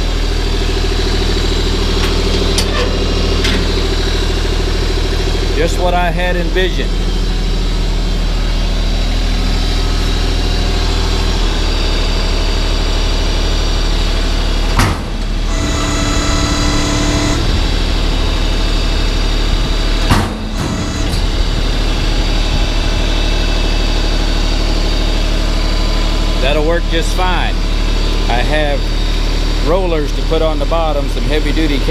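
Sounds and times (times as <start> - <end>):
high-pitched whine: 0.0 - 24.8
tractor diesel engine idling: 0.0 - 31.9
clunk: 2.0 - 4.0, 14.7 - 17.4, 20.0 - 21.5.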